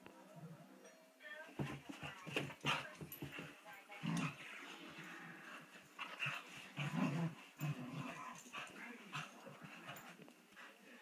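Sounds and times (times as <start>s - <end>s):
dogs growling and grunting: 4.0s - 10.2s.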